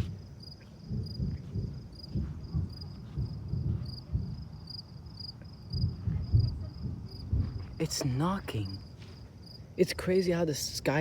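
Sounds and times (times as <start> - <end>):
low dull thumps in sky: 0.0 - 4.9, 5.7 - 7.8
crickets chirping: 0.0 - 11.0.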